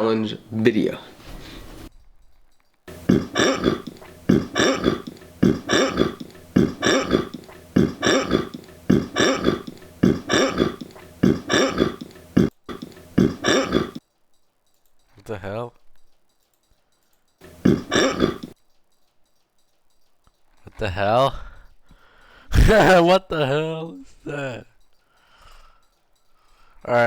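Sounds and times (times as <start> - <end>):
man burping: 2.9 - 14.0, 17.4 - 18.6.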